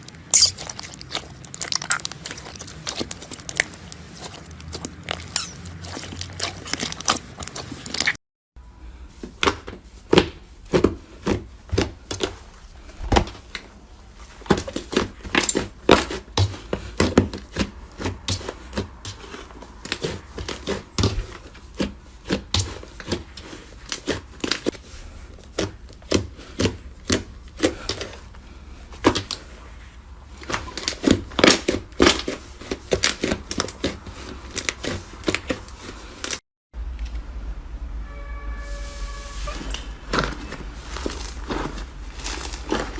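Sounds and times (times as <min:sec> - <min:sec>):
slime squeezed popping: 0:00.3 - 0:07.2.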